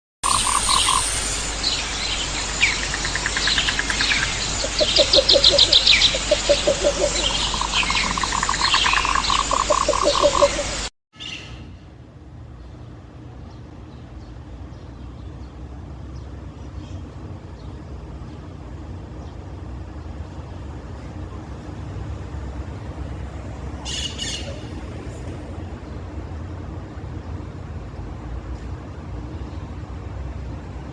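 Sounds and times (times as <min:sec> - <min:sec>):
bird squawking: 0:00.3 - 0:01.1, 0:03.0 - 0:11.6, 0:23.8 - 0:24.7.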